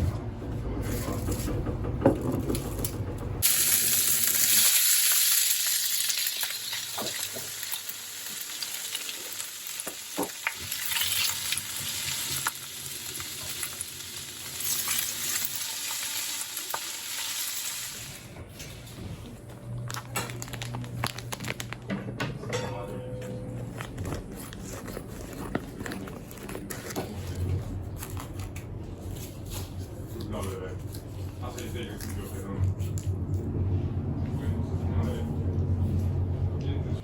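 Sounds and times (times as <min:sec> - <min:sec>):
food sizzling in a hot pan: 0:03.4 - 0:18.3.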